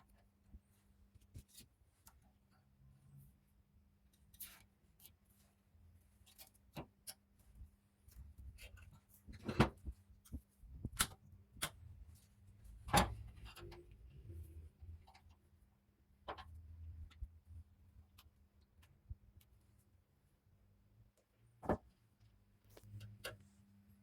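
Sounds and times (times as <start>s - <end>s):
clicks and knocks of parts handled: 8.0s - 14.0s.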